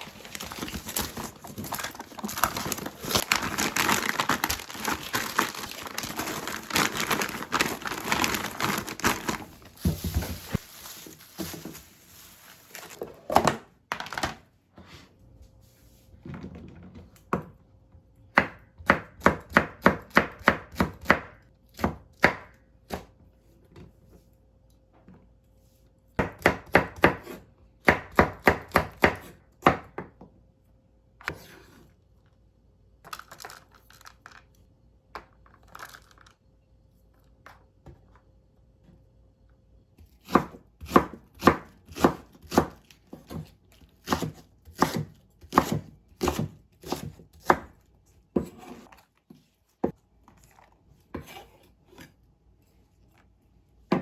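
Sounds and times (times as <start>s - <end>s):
knife chopping on cutting board: 40.3s - 47.7s.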